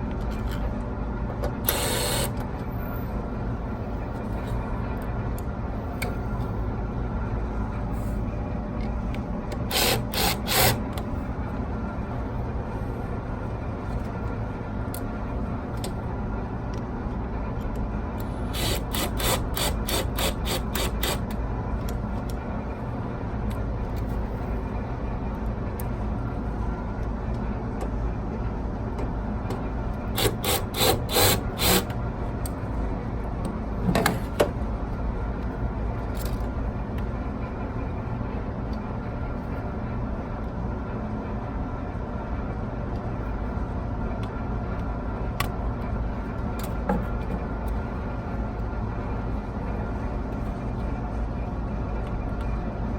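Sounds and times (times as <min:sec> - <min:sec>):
steady low rumble: 0:00.0 - 0:30.6
hand tool ratcheting: 0:30.2 - 0:31.9.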